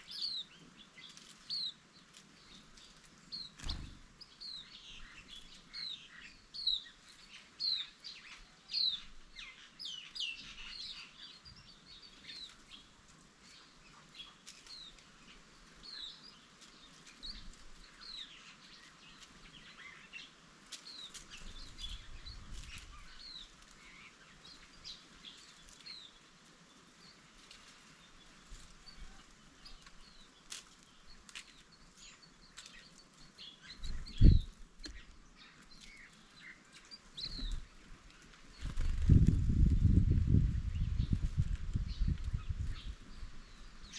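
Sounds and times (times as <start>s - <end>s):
birds chirping: 0.0s - 43.9s.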